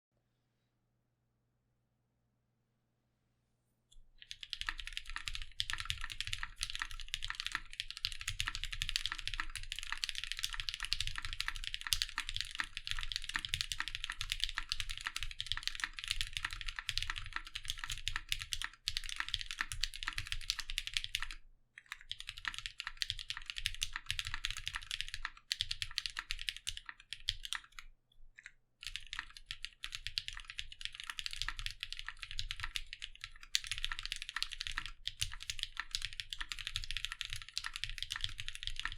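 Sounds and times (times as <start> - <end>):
mechanical keyboard typing: 4.2 - 27.8, 28.4 - 38.9.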